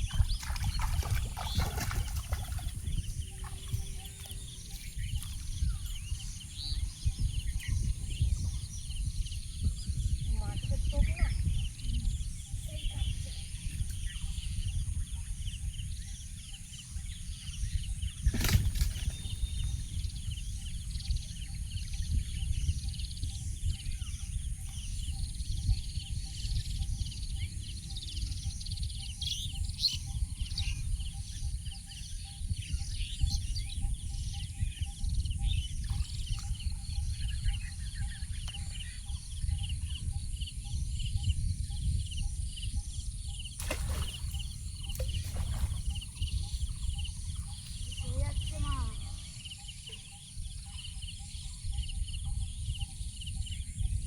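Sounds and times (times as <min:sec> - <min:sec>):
birds chirping: 0:00.0 - 0:42.3, 0:43.4 - 0:53.9
insect-like hiss: 0:43.4 - 0:53.8.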